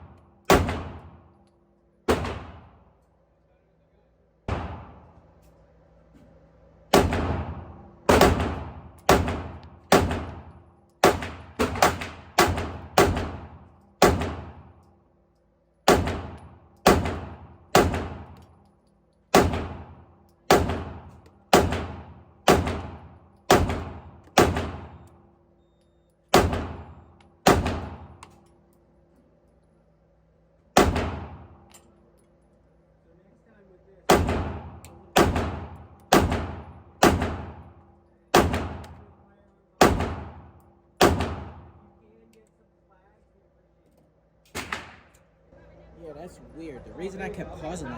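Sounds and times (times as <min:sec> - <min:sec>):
gunshots with reverberant tail: 0:00.0 - 0:01.3, 0:02.1 - 0:02.9, 0:04.5 - 0:05.2, 0:06.9 - 0:14.8, 0:15.9 - 0:18.4, 0:19.3 - 0:25.1, 0:26.3 - 0:28.3, 0:30.8 - 0:31.7, 0:34.1 - 0:39.0, 0:39.8 - 0:41.8.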